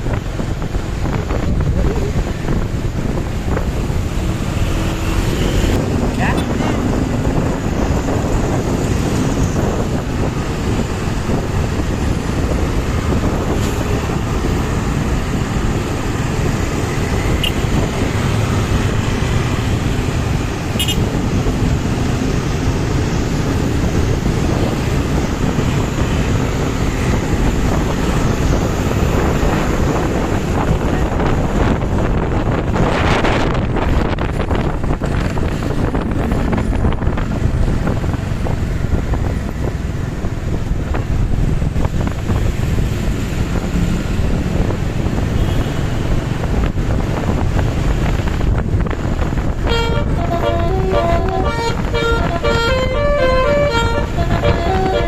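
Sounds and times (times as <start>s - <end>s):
road and traffic noise: 0.0s - 55.0s
wind buffeting microphone: 0.0s - 55.0s.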